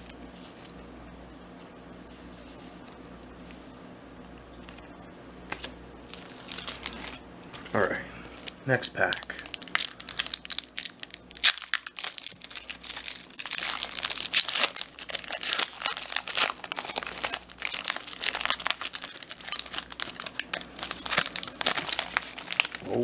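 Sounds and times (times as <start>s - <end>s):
foil wrapper crinkling and tearing: 5.5s - 7.7s, 8.3s - 23.0s.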